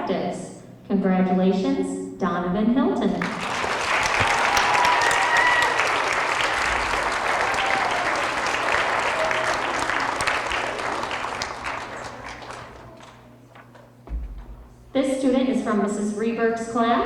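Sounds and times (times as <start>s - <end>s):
children applauding: 3.2s - 13.7s.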